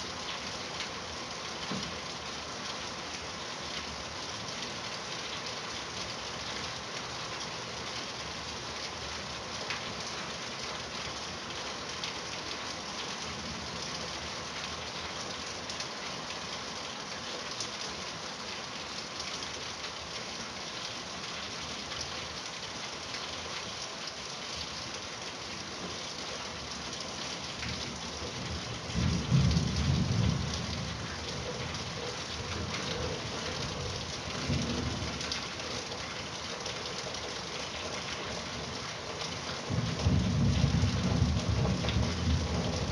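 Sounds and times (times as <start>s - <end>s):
steady rain falling: 0.0s - 42.9s
thunder rumbling: 28.9s - 31.0s.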